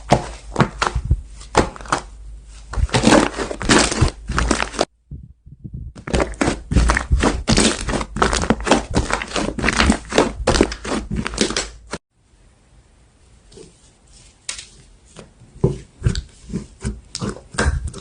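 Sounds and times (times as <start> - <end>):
slime crackling and popping: 2.9 - 4.9, 6.0 - 12.0.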